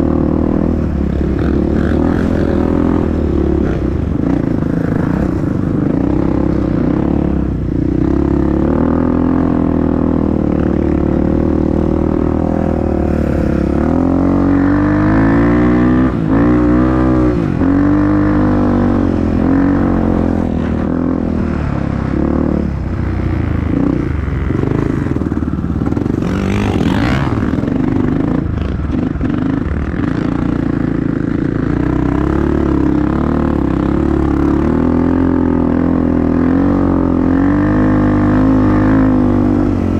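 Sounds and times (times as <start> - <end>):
dirt bike engine revving: 0.0 - 39.9.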